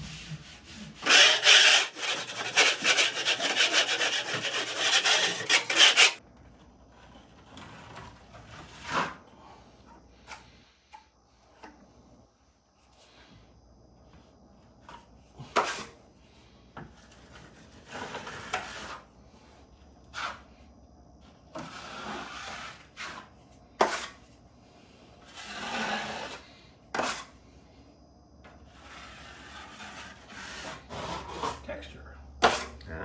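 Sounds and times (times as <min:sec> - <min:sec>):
drywall knife scraping wall: 0:00.0 - 0:06.2, 0:06.9 - 0:09.4, 0:15.4 - 0:16.0, 0:16.9 - 0:20.6, 0:21.5 - 0:24.3, 0:25.2 - 0:27.4, 0:28.6 - 0:31.8, 0:32.4 - 0:32.8.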